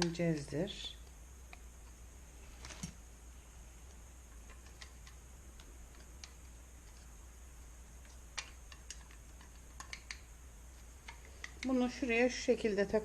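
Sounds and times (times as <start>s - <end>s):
plastic parts clicking: 4.3s - 7.1s, 8.0s - 10.2s, 11.0s - 11.8s.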